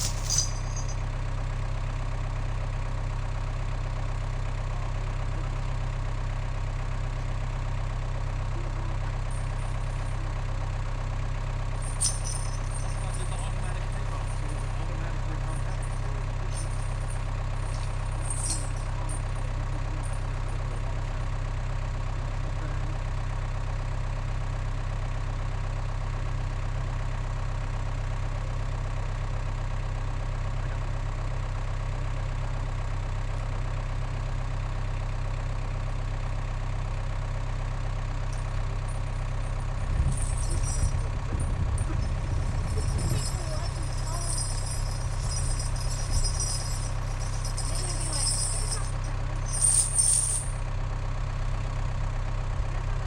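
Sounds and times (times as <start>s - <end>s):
engine idling: 0.0s - 53.0s
uneven low rumbling: 38.9s - 50.6s.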